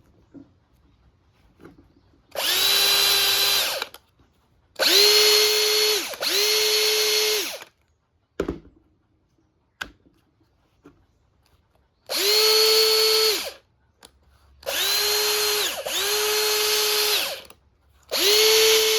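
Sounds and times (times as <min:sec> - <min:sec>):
drill motor whine: 0:02.4 - 0:03.9, 0:04.8 - 0:07.7, 0:12.1 - 0:13.6, 0:14.7 - 0:17.5, 0:18.1 - 0:18.9.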